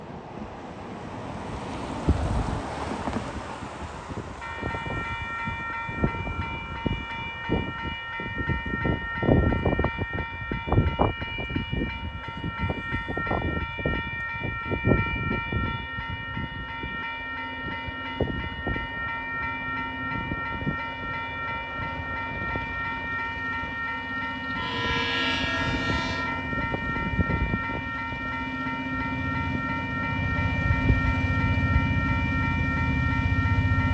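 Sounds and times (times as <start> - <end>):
train low hum: 0.0 - 33.9
wind buffeting microphone: 1.5 - 19.2, 20.1 - 23.8, 24.5 - 28.4, 29.1 - 33.9
level crossing warning bells: 4.4 - 33.9.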